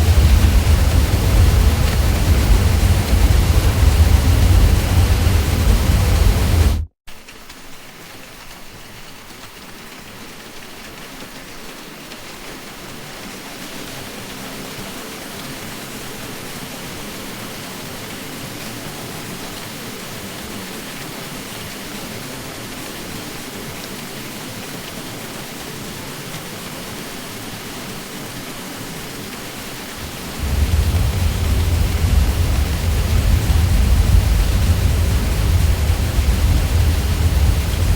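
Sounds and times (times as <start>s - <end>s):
ceiling fan air whoosh: 0.0s - 6.9s, 30.0s - 37.9s
deep low hum: 0.0s - 6.9s, 30.0s - 37.9s.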